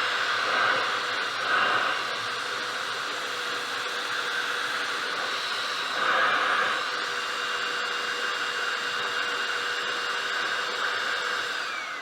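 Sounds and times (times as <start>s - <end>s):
floor cleaner motor whining: 0.0s - 12.0s.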